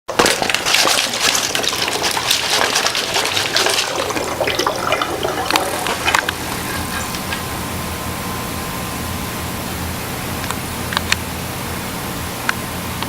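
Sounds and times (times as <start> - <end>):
water gurgling between bottles: 0.4 - 7.6.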